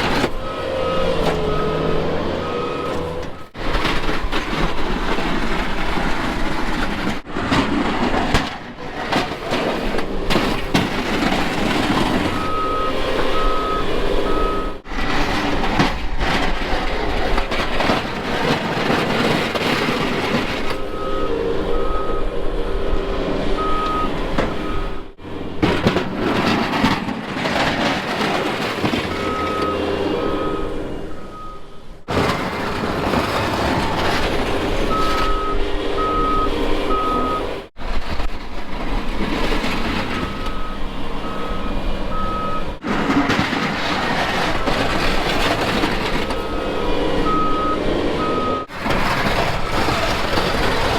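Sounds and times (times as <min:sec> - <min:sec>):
engine rushing: 0:00.0 - 0:50.9
backup alarm beeping: 0:00.2 - 0:03.6, 0:12.2 - 0:14.8, 0:20.7 - 0:25.2, 0:29.1 - 0:31.8, 0:34.9 - 0:37.7, 0:40.2 - 0:42.8, 0:46.2 - 0:48.7.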